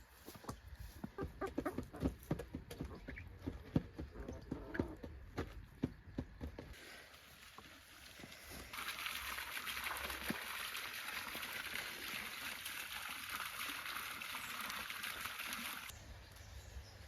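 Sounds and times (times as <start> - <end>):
water running: 6.8 - 15.9.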